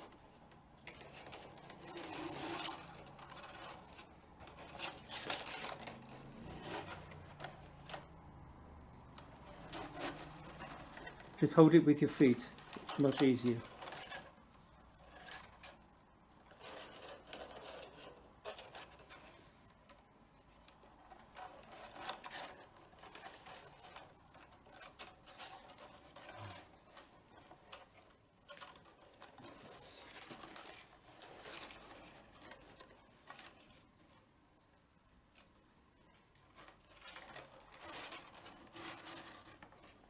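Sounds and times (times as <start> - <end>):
leather strap rubbing and scraping: 0.9 - 8.1, 9.1 - 11.7.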